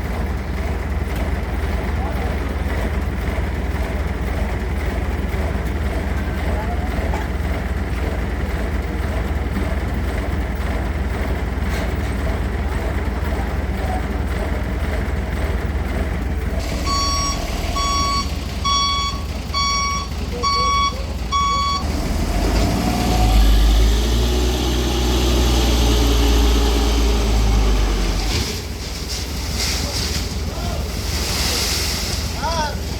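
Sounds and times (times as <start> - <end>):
construction machinery engines: 0.0 - 32.9
deep loud engine drone: 12.2 - 28.5
reversing alarm beeping: 16.7 - 22.0.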